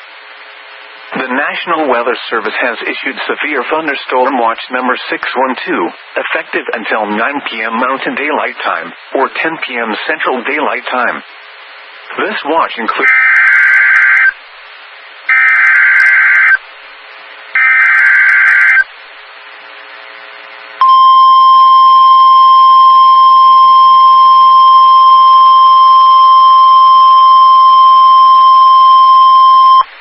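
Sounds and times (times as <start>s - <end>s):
data bursts: 12.2s - 14.4s, 15.3s - 16.6s, 17.6s - 18.9s
steady alarm tone: 13.0s - 14.4s, 15.3s - 16.6s, 17.6s - 18.9s.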